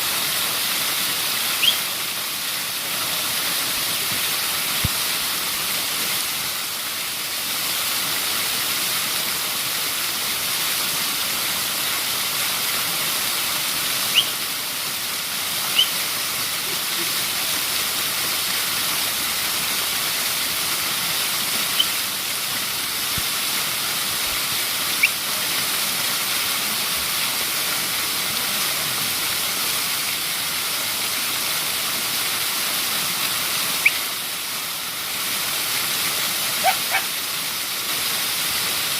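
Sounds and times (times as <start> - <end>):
waterfall rushing: 0.0 - 38.9
short high chirps: 1.6 - 1.8, 14.1 - 14.3, 15.7 - 15.9, 21.7 - 22.0.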